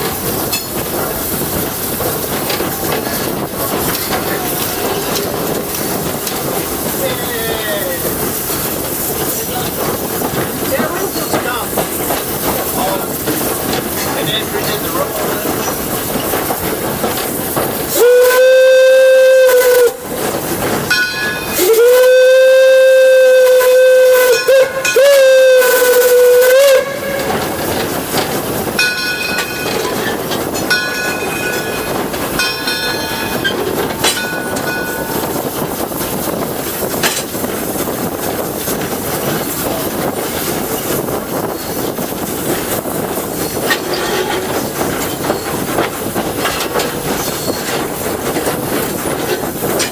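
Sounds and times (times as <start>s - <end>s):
moving train noise: 0.0s - 49.9s
steam whistle blasts: 17.9s - 20.0s, 21.5s - 27.6s.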